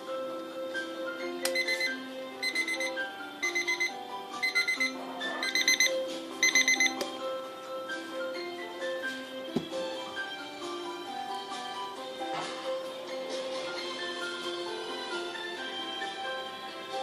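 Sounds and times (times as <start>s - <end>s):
music melody: 0.0s - 12.4s
alarm clock beeping: 1.4s - 7.0s.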